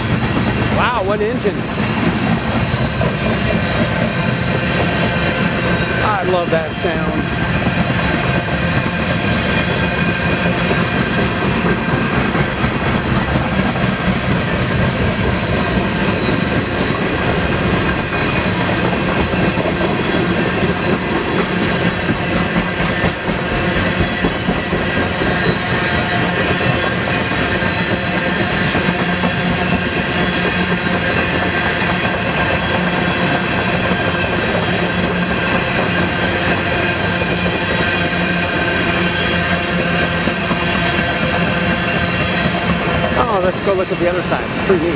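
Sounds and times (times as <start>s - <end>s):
train wheels clattering on rails: 0.0s - 44.9s.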